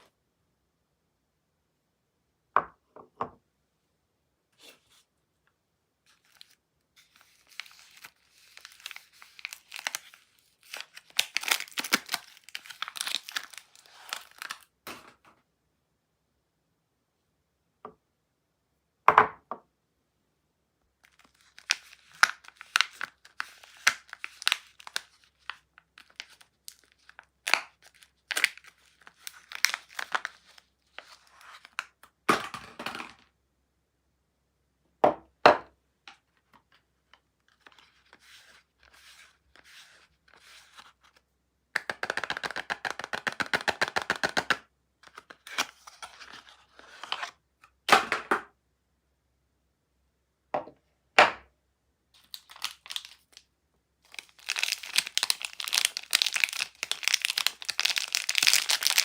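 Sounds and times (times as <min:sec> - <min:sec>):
wrapper crinkling and tearing: 0:06.1 - 0:14.7, 0:21.0 - 0:32.0, 0:52.2 - 0:59.0.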